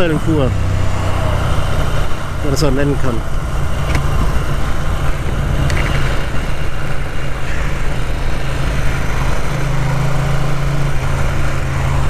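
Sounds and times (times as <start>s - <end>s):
motorcycle engine droning: 0.0s - 12.0s
road and wind noise: 0.0s - 12.0s.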